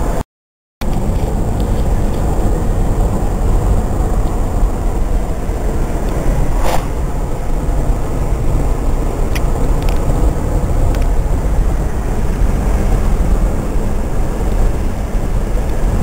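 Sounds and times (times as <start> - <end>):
vehicle engine and road rumble: 0.0 - 0.2, 0.8 - 16.0.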